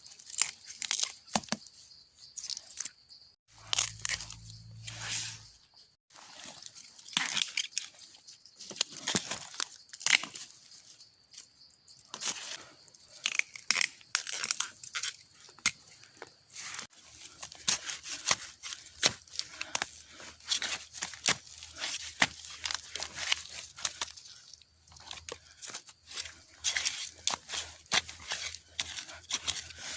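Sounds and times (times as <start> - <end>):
dry leaves crackling and snapping: 0.0 - 1.4, 3.6 - 4.5, 8.6 - 10.6, 17.0 - 29.9.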